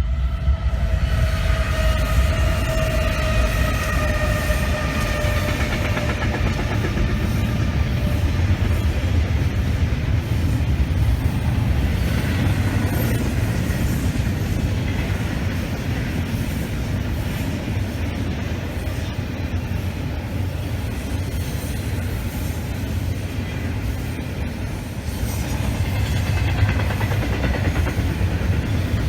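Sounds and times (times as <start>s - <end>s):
train horn: 0.0s - 8.8s
train rumbling and clattering: 0.0s - 29.0s.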